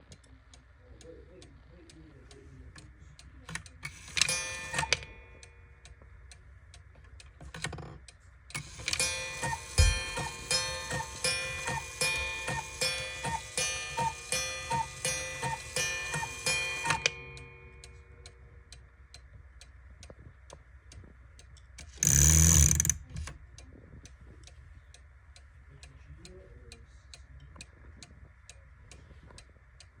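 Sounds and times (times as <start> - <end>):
clock ticking: 0.0 - 30.0
music box plinking tune: 3.9 - 5.7, 8.6 - 18.3.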